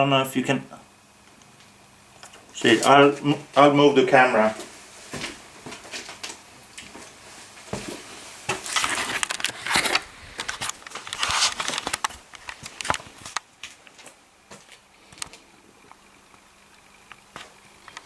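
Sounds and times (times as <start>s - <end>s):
camera handling rustling: 8.7s - 13.5s.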